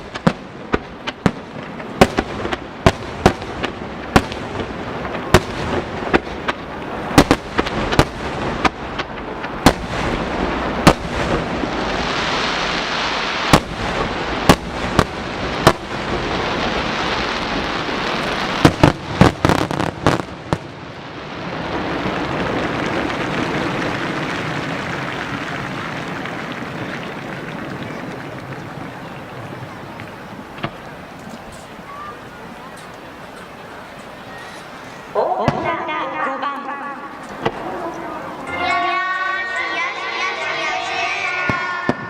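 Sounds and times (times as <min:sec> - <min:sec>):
fireworks bangs: 0:00.0 - 0:42.0
rushing hiss: 0:09.7 - 0:18.8.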